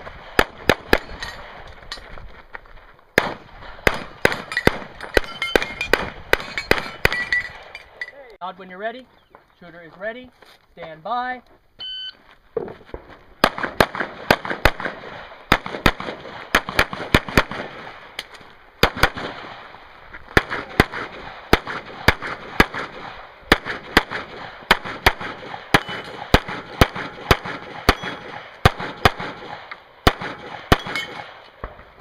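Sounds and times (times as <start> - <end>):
pistol shots: 0.0 - 1.7, 3.2 - 8.0, 13.4 - 19.7, 20.3 - 31.8.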